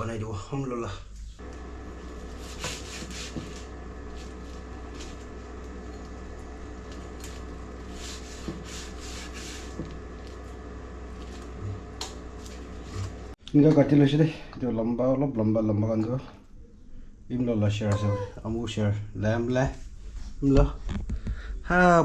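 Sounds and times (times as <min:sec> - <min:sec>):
steady electrical hum: 0:00.0 - 0:15.2.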